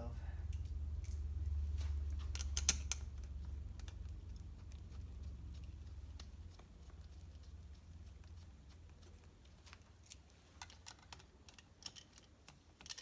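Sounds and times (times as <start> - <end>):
low steady hum: 0.0 - 13.0
small metal hardware clicking: 2.2 - 3.1, 10.1 - 13.0.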